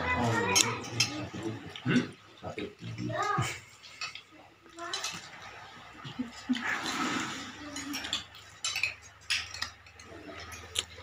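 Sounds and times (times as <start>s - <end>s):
tableware clinking: 0.0s - 1.8s, 3.8s - 5.5s, 6.8s - 11.0s.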